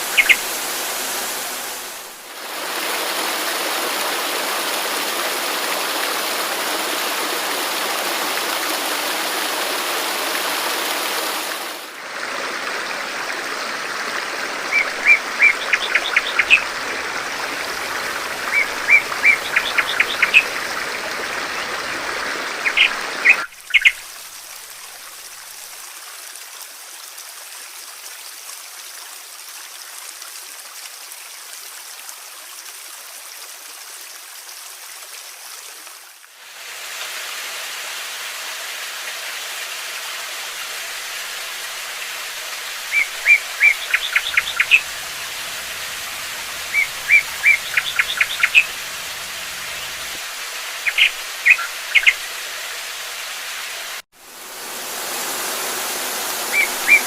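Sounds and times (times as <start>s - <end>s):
small bird chirping: 0.0s - 0.5s, 14.8s - 16.7s, 18.4s - 20.6s, 22.6s - 24.0s, 42.9s - 45.4s, 46.2s - 50.1s, 50.8s - 52.3s, 56.5s - 57.0s
rushing water: 0.0s - 57.0s
trickling stream: 0.0s - 57.0s.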